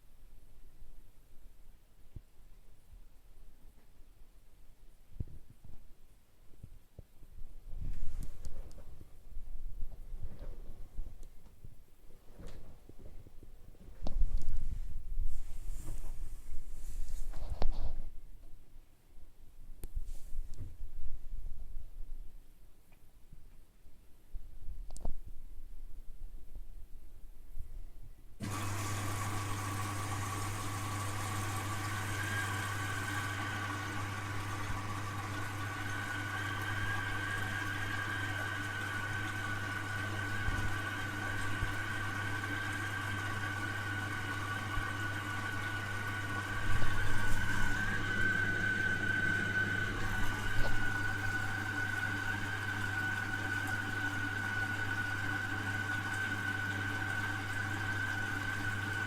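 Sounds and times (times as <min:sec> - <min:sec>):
washing machine humming: 0:28.4 - 0:59.0.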